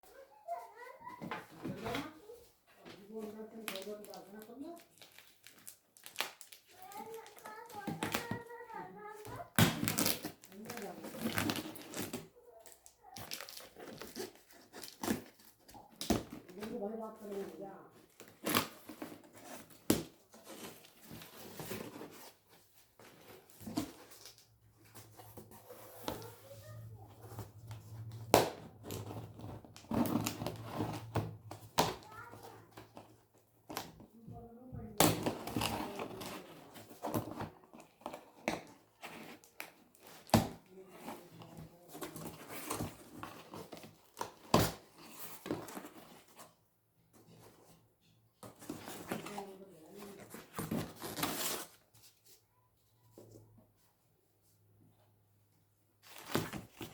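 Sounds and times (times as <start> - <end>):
plastic packaging rustling: 1.6 - 34.1.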